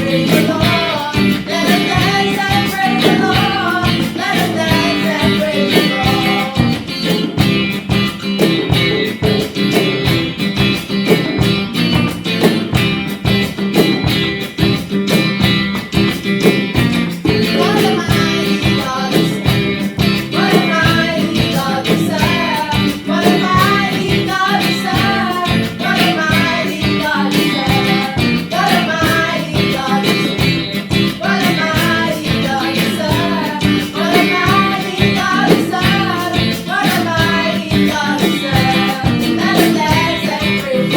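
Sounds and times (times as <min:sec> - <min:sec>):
person singing: 0:00.0 - 0:07.3, 0:17.2 - 0:40.9
upbeat song with guitar: 0:00.0 - 0:40.9.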